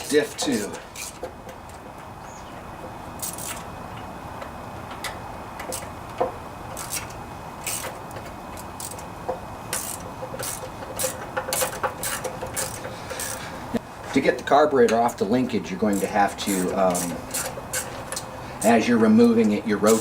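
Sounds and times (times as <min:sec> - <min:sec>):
steady background noise: 0:00.0 - 0:20.0
wrench clicking on metal nuts: 0:00.5 - 0:01.8, 0:03.2 - 0:13.5, 0:15.9 - 0:20.0.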